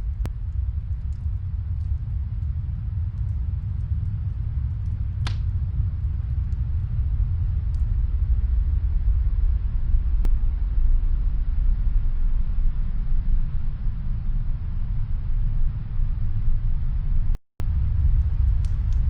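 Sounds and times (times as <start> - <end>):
fireplace crackling: 0.0 - 8.8, 17.6 - 19.0
snowstorm wind rumble: 0.0 - 19.0.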